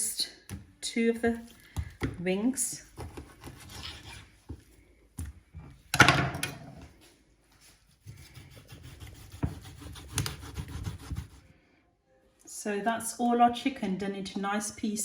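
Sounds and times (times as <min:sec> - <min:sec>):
knife cutting raw chicken: 0:02.9 - 0:04.3, 0:08.0 - 0:11.4.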